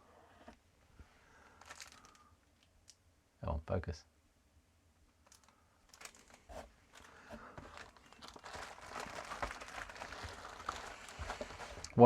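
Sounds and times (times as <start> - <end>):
plastic packaging crinkling: 1.6 - 2.3, 5.2 - 12.0.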